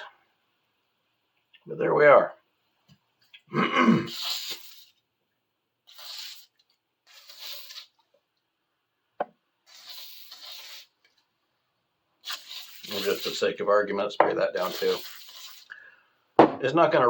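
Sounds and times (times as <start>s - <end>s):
spray hissing: 4.1s - 5.0s, 5.9s - 8.0s, 9.6s - 11.2s, 12.2s - 13.8s, 14.4s - 15.8s
object knocking on bench: 16.4s - 16.6s.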